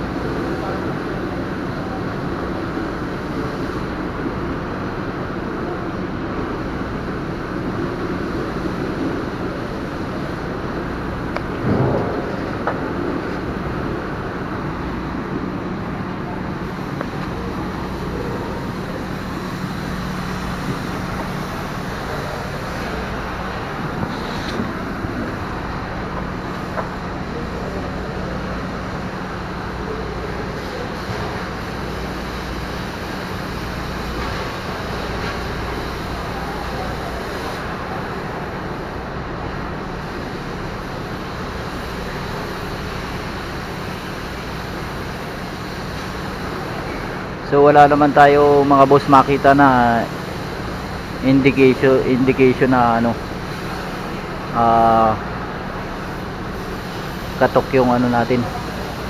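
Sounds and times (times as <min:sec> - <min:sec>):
constant hiss: 0:00.0 - 0:59.0
engine droning steadily: 0:00.0 - 0:59.0
low mechanical hum: 0:00.0 - 0:59.0.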